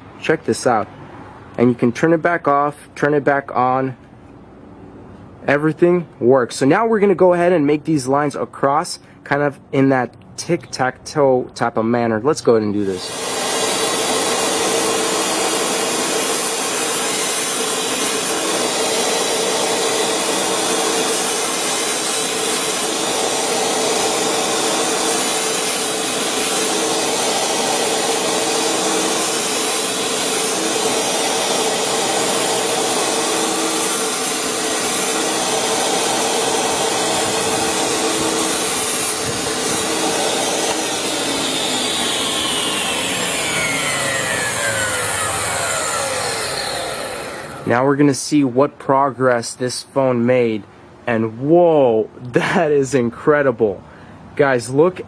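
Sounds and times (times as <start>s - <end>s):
power saw cutting: 12.9s - 47.8s.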